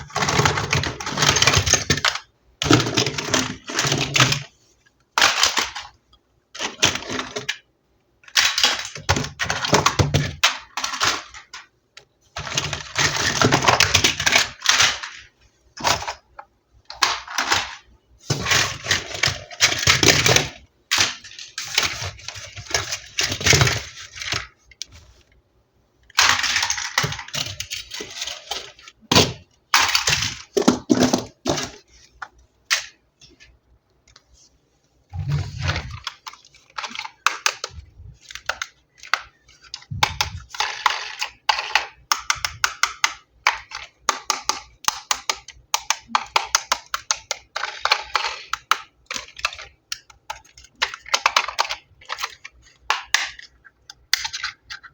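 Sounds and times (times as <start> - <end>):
toy pieces clicking: 35.9 - 54.9.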